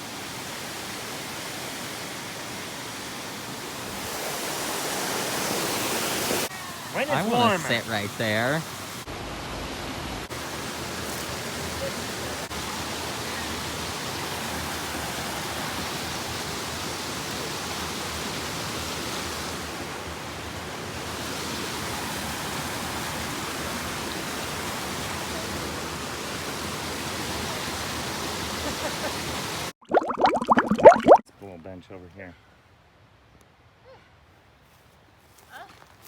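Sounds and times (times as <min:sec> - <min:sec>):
water rushing over waterfall: 0:00.0 - 0:09.1.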